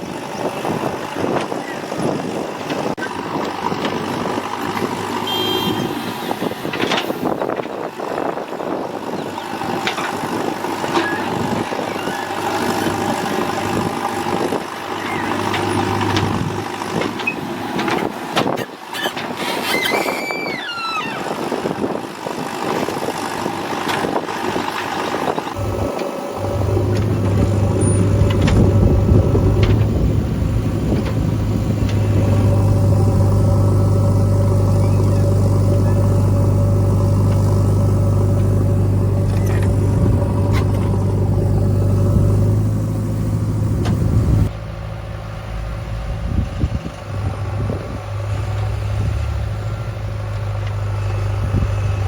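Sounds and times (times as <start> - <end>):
heavy diesel machinery running: 0.0 - 19.4, 21.3 - 52.0
high squeal falling pitch: 19.0 - 21.5
machinery knocks: 25.6 - 33.3.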